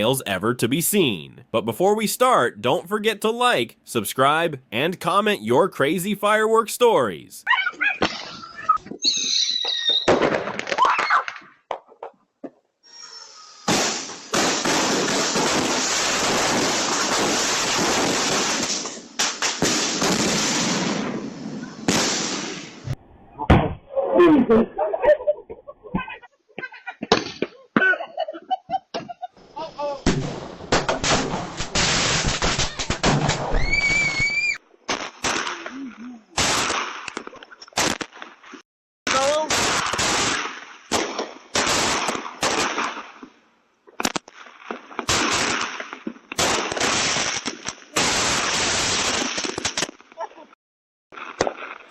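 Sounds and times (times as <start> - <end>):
firework whistle: 9.0 - 10.2, 33.5 - 34.6
fireworks popping and crackling: 9.0 - 12.0, 13.6 - 22.8, 30.0 - 34.3, 34.9 - 35.7, 36.4 - 43.3, 43.9 - 50.3, 51.1 - 51.9
sharp cracks: 34.9 - 35.8.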